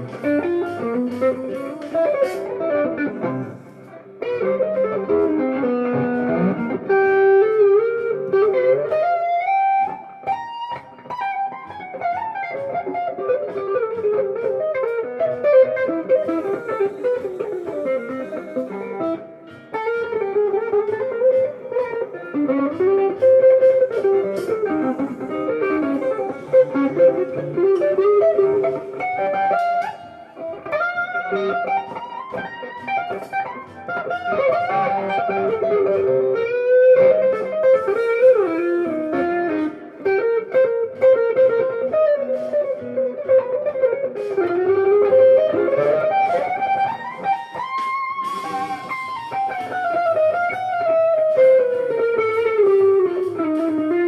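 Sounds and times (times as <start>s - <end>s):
jazz fusion guitar music: 0.0s - 54.0s.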